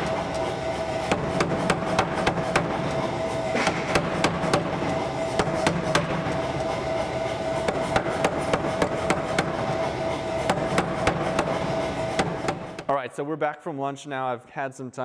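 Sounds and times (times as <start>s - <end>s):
steady machine hum: 0.0s - 12.9s
hammer striking hot steel: 1.0s - 6.8s, 7.5s - 9.8s, 10.4s - 12.9s.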